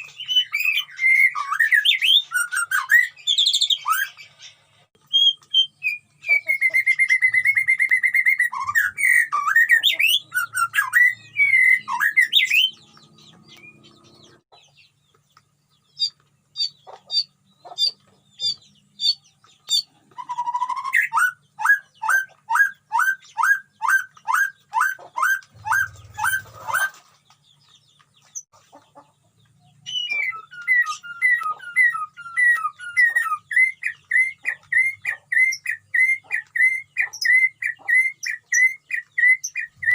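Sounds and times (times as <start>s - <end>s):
bird song warbling: 0.0s - 39.9s.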